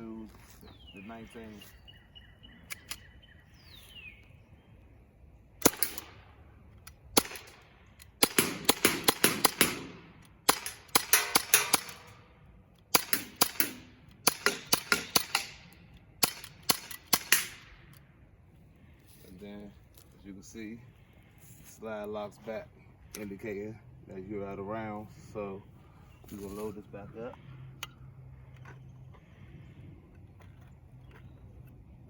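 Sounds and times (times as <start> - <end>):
air pistol shots: 5.6 - 6.4, 7.1 - 12.2, 12.9 - 17.9.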